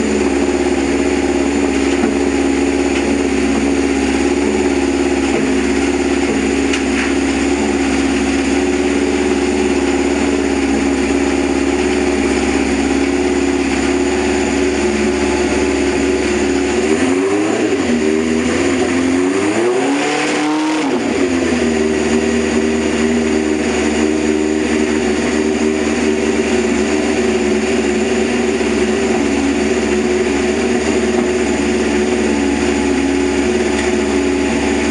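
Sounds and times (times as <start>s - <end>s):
engine idling with throttle blips: 0.0s - 34.9s.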